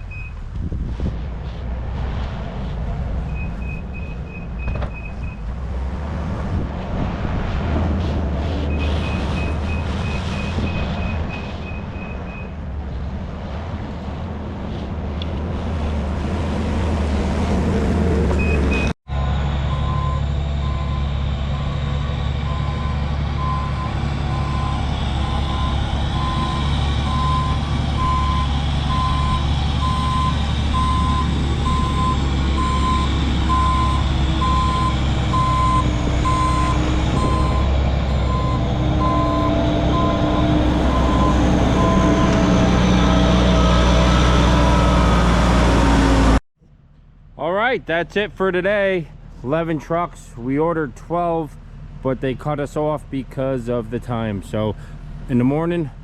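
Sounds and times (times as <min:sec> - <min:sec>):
diesel engine rumble: 0:00.0 - 0:56.0
low-pitched backup alarm beeping: 0:18.4 - 0:21.8, 0:22.4 - 0:42.4
high-pitched backup alarm beeping: 0:22.5 - 0:42.4.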